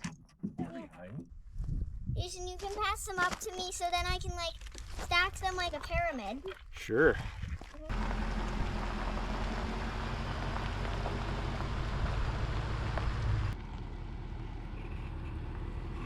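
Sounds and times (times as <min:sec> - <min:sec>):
road and wind noise: 0:01.3 - 0:06.3, 0:07.4 - 0:16.0
vehicle engine humming: 0:07.9 - 0:16.0.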